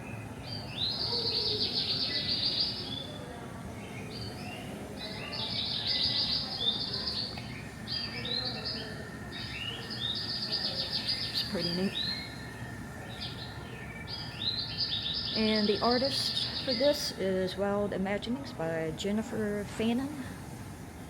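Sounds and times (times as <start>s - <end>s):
songbird buzzy trill: 3.8s - 17.3s.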